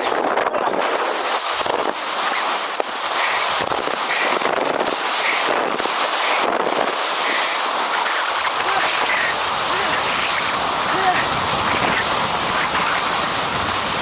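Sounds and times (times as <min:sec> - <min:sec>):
strong wind buffeting microphone: 0:00.0 - 0:14.0.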